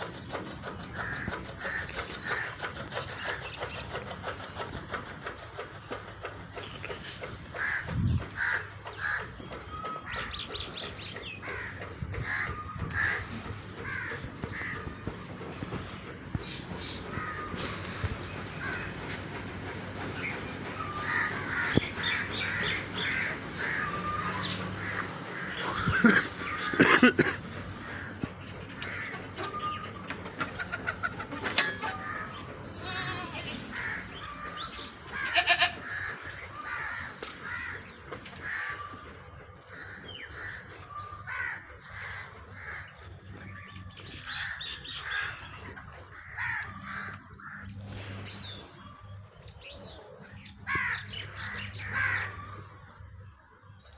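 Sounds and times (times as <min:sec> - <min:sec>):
crows cawing: 0:00.8 - 0:04.6, 0:07.2 - 0:53.2.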